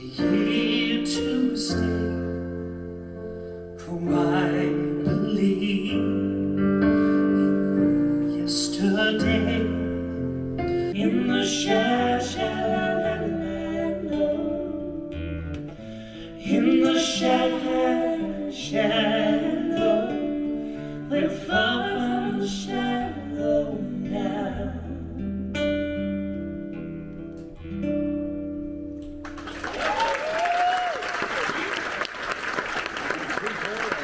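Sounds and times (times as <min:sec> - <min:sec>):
person singing live: 0:00.0 - 0:02.8, 0:03.8 - 0:15.2, 0:16.3 - 0:25.3
guitar accompaniment: 0:00.0 - 0:29.9
audience applause: 0:29.2 - 0:34.0.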